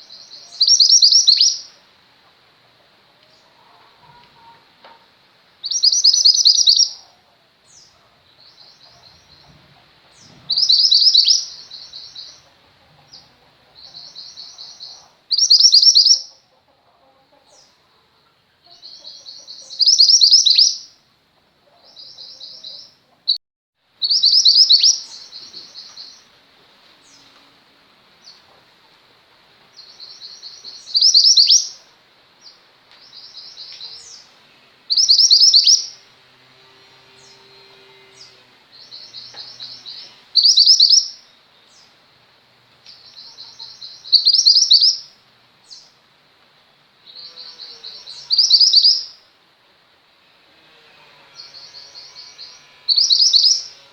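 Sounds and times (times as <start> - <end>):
songbird trilling: 0.0 - 1.8, 5.6 - 7.0, 10.1 - 12.4, 13.8 - 16.4, 18.7 - 21.0, 24.0 - 26.3, 29.8 - 31.9, 34.9 - 36.0, 38.1 - 42.0, 42.9 - 46.0, 47.0 - 49.2, 51.4 - 53.8.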